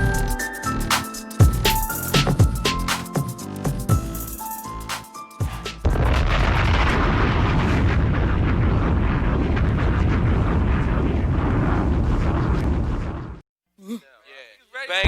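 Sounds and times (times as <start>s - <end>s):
explosion sound effect: 5.8s - 13.4s.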